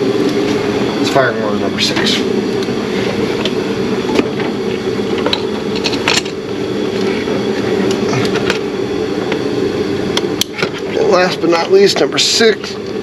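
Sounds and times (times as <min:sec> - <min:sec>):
shop equipment drone: 0:00.0 - 0:13.0.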